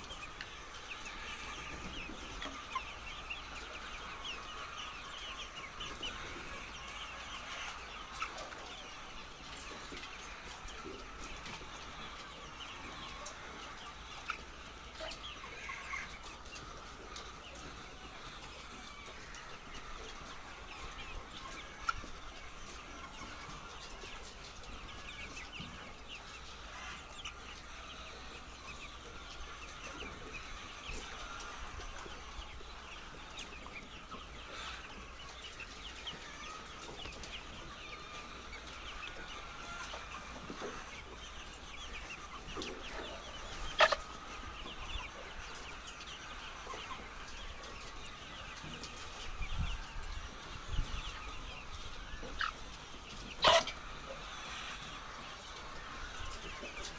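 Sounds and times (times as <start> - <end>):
hens clucking: 0.0 - 56.9.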